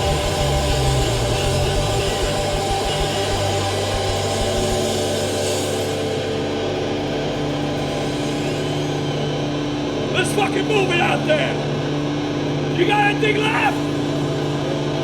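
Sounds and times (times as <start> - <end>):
punk band playing: 0.0 - 8.0
guitar and bass notes ringing: 0.0 - 15.0.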